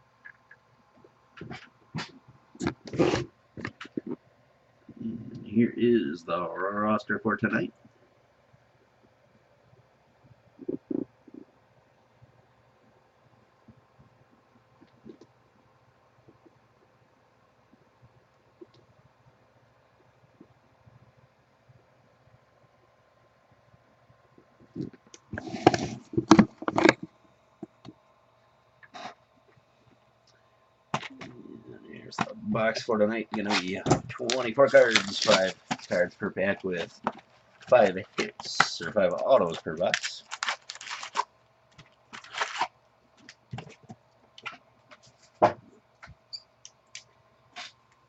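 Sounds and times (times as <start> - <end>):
knocks and rustles on a desk: 45.4 - 46.2.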